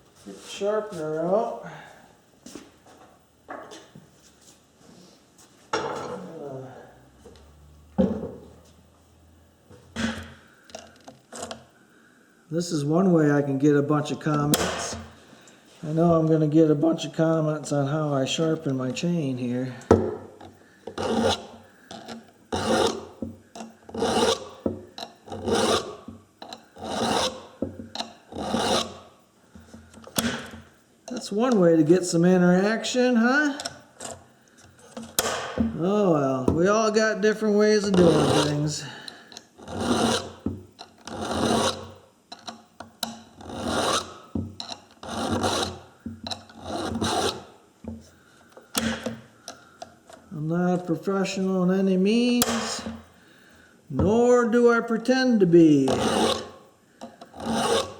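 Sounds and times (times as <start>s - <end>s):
file rasping on chainsaw chain: 21.0s - 21.5s, 22.6s - 23.0s, 23.9s - 24.5s, 25.3s - 26.0s, 26.8s - 27.4s, 28.3s - 29.0s, 38.0s - 38.8s, 39.6s - 40.4s, 41.1s - 41.9s, 43.4s - 44.2s, 45.0s - 45.8s, 46.6s - 47.4s, 55.9s - 56.5s, 57.3s - 57.9s.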